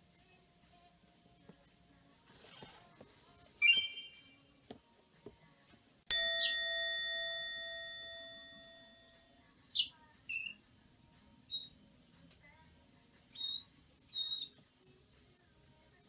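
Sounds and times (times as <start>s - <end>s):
short high chirps: 3.6s - 4.4s
struck bell ringing: 6.1s - 9.3s.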